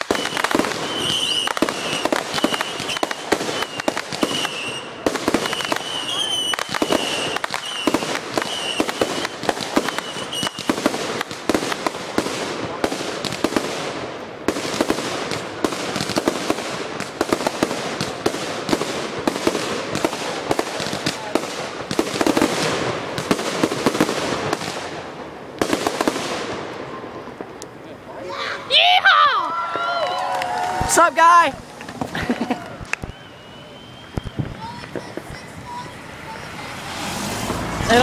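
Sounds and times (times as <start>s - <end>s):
firework whistles: 0.0s - 13.6s, 32.7s - 38.0s
fireworks bangs and crackling: 0.0s - 38.0s.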